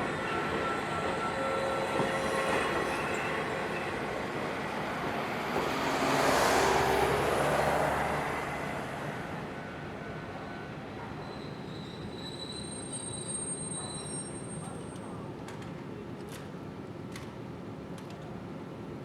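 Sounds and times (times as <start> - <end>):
train wheels rumbling on rails: 0.0 - 6.0.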